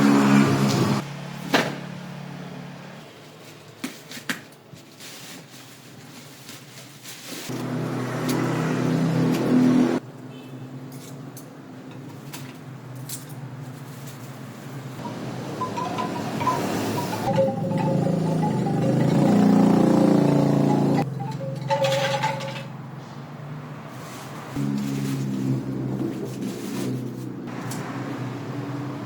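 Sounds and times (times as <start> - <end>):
engine running: 15.0 - 22.8.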